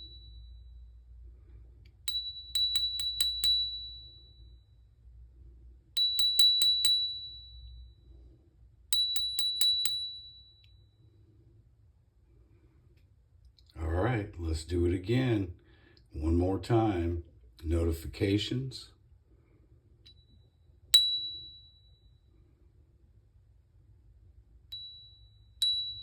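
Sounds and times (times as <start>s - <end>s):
small metal bell dinging: 0.0s - 5.0s, 5.9s - 8.3s, 8.9s - 11.1s, 20.1s - 22.4s, 24.6s - 26.0s.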